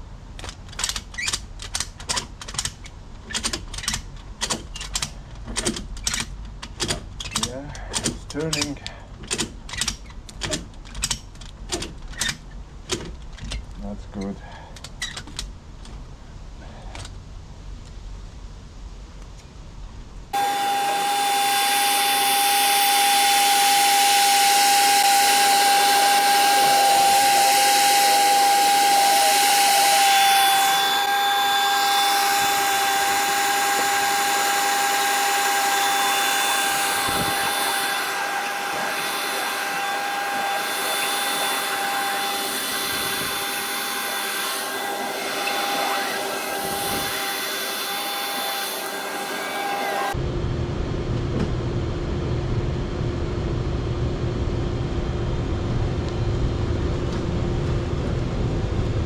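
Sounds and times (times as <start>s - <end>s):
electric motor whining: 20.4s - 50.2s.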